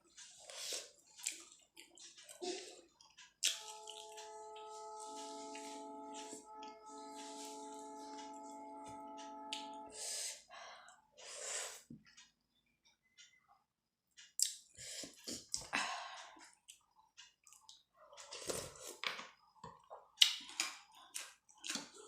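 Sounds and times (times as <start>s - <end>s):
wet chewing clicks: 1.0s - 4.0s, 19.7s - 22.0s
held tone: 3.5s - 10.4s
person breathing: 9.9s - 11.9s, 14.8s - 16.4s.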